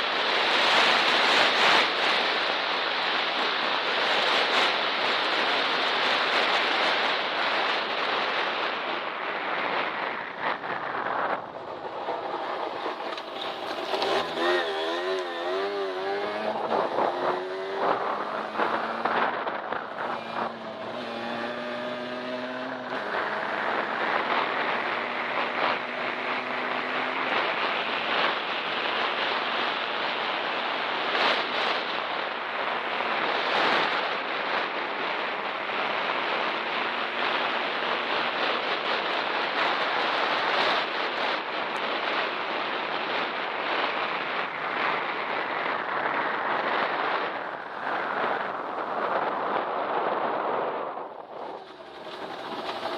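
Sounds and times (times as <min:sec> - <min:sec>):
wind on microphone: 0:00.0 - 0:52.9
dirt bike engine revving: 0:12.9 - 0:28.0.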